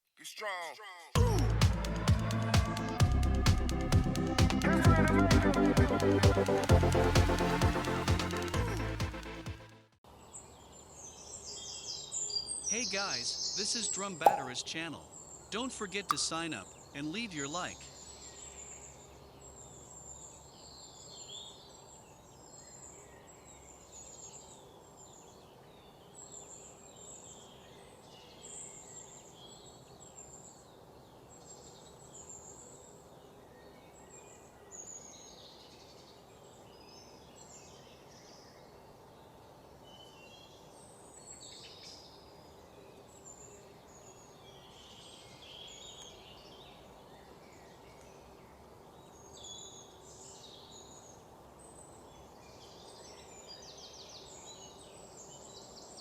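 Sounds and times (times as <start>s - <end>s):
small birds chirping: 10.1s - 56.0s
steady low hiss: 12.7s - 18.6s.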